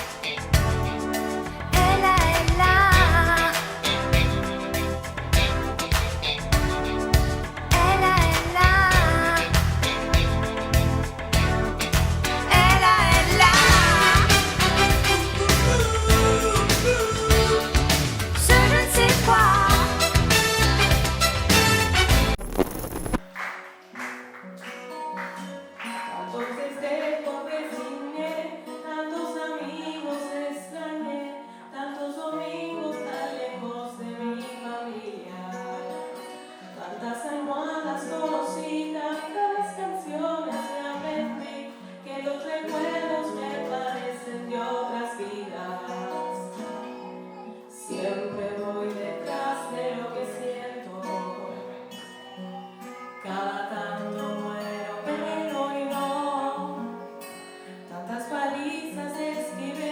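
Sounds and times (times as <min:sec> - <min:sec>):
guitar accompaniment: 0:00.0 - 0:59.9
person singing: 0:01.1 - 0:05.0, 0:07.6 - 0:10.1, 0:12.3 - 0:20.9, 0:26.0 - 0:36.1, 0:36.8 - 0:56.9, 0:57.9 - 0:59.9.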